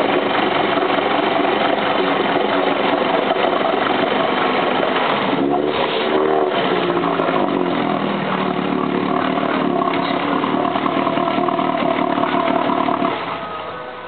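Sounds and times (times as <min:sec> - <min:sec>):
outboard motor running: 0:00.0 - 0:13.4.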